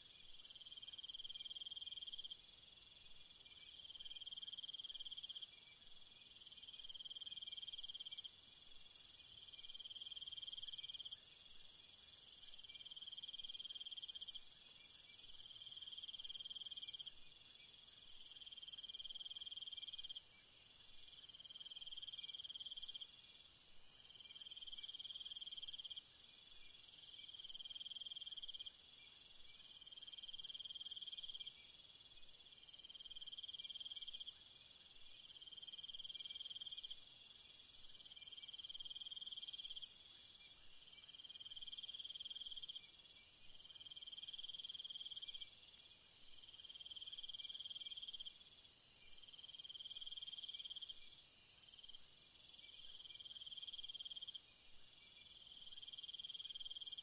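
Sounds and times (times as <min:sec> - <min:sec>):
lower insect trill: 0:00.0 - 0:57.0.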